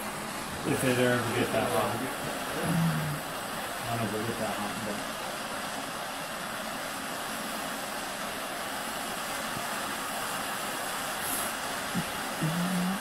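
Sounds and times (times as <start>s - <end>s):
gas torch hissing: 0.0s - 13.0s.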